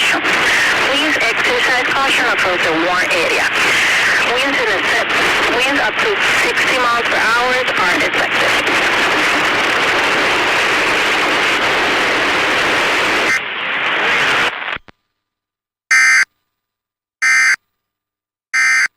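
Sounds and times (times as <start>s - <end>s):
static hiss: 0.0s - 14.8s.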